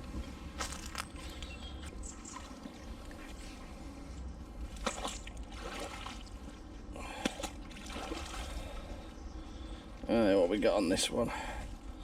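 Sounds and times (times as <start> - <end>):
water dripping and squelching: 4.2 - 10.1.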